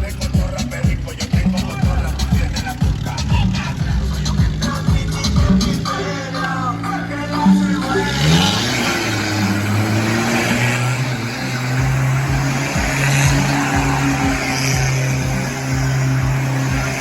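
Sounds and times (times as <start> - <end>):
loud rushing noise: 0.0 - 17.0
vehicle engine revving: 0.0 - 17.0.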